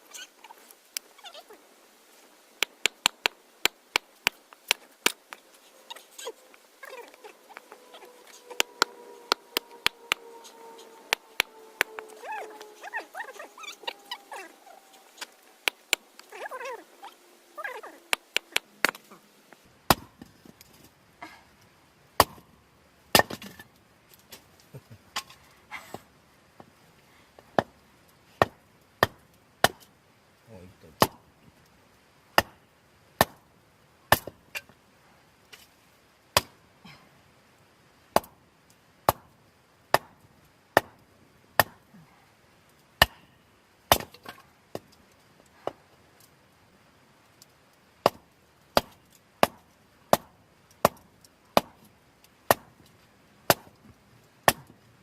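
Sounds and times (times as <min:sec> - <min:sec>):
wood chopping strikes: 0:19.9 - 0:20.3, 0:22.2 - 0:22.5, 0:23.1 - 0:23.6, 0:28.4 - 0:29.9, 0:31.0 - 0:31.2, 0:32.4 - 0:32.6, 0:33.2 - 0:33.5, 0:34.1 - 0:34.4, 0:36.4 - 0:36.6, 0:38.2 - 0:38.4, 0:39.1 - 0:40.2, 0:40.8 - 0:41.0, 0:41.6 - 0:41.8, 0:43.0 - 0:43.2, 0:43.9 - 0:44.9, 0:48.0 - 0:51.9, 0:52.5 - 0:52.8, 0:53.5 - 0:53.8, 0:54.4 - 0:54.8.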